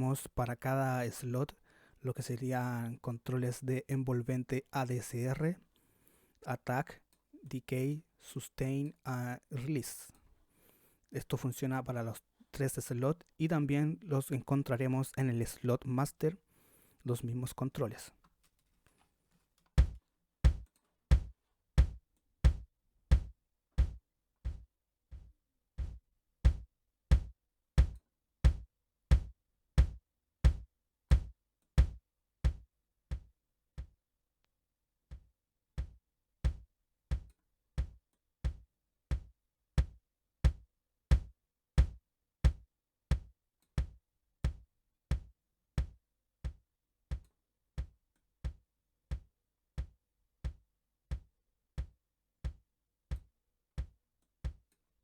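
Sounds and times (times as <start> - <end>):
bass drum thumps with click: 19.8 - 34.0, 35.1 - 54.7.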